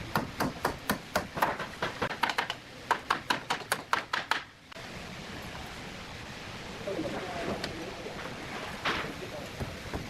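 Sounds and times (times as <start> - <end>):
rapid hammer strikes on wood: 0.0 - 4.5, 9.6 - 10.0
steady hiss: 0.0 - 10.0.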